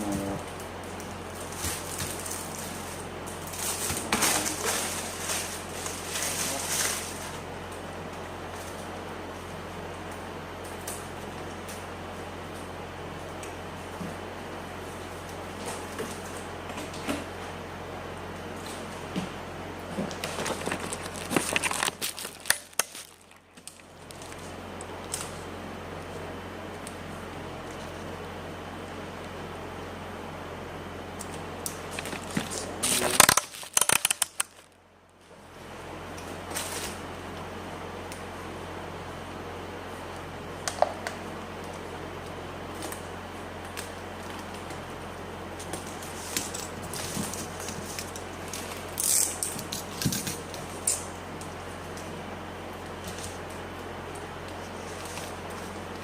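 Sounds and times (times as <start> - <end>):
low electrical hum: 0.0 - 56.0
plastic crinkling: 0.7 - 7.4, 20.0 - 25.4, 31.7 - 34.8
sharp plastic clicks: 33.1 - 34.7.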